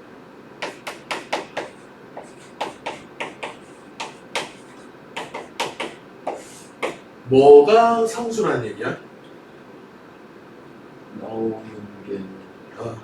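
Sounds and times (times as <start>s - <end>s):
writing taps and scratches on board: 0.6s - 7.0s.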